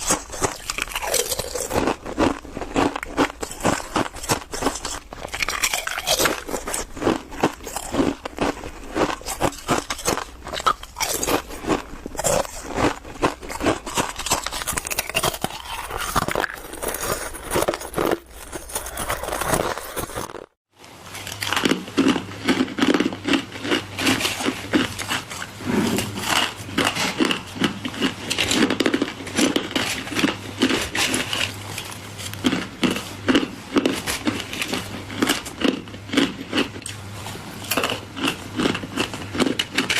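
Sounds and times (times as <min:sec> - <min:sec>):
ice being chewed: 0:00.0 - 0:39.9.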